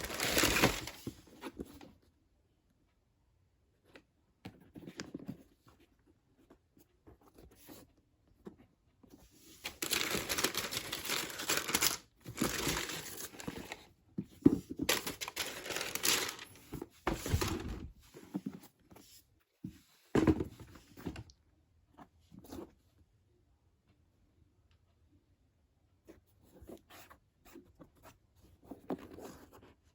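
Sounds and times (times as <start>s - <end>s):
cardboard box crinkling: 0.0s - 1.3s, 9.6s - 13.8s, 14.7s - 17.9s.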